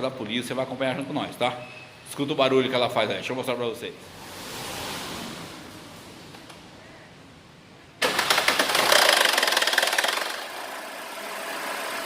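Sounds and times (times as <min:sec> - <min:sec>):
car engine starting and idling: 0:08.0 - 0:12.0
fast engine rattle: 0:08.0 - 0:12.0.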